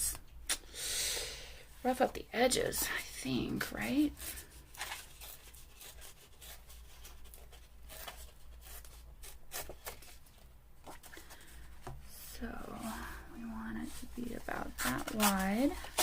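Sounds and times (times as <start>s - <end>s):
paper rustling and crinkling: 4.0s - 11.7s, 13.8s - 16.0s.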